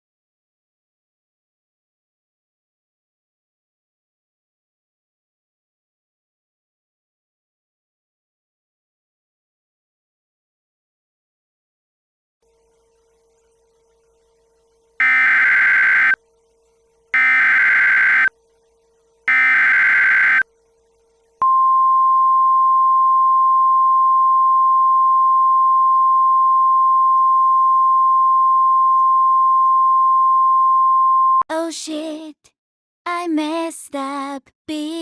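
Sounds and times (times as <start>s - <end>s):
harsh digital data screech: 15.0s - 16.2s, 17.2s - 18.3s, 19.3s - 20.4s
steady warning alarm tone: 15.0s - 16.2s, 17.2s - 18.3s, 19.3s - 20.4s.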